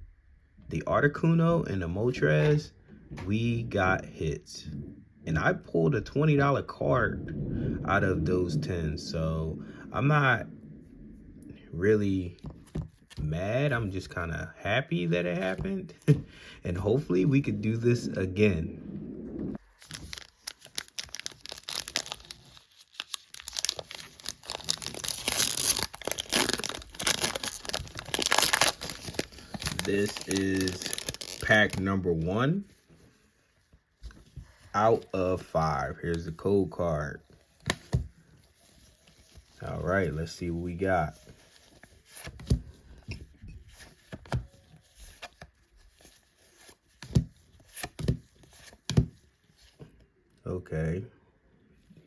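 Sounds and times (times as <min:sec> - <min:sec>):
trading cards rustling: 0:19.6 - 0:32.0
wrapper crinkling and tearing: 0:19.6 - 0:32.1, 0:37.4 - 0:40.4
cards tapping and knocking: 0:47.0 - 0:49.2.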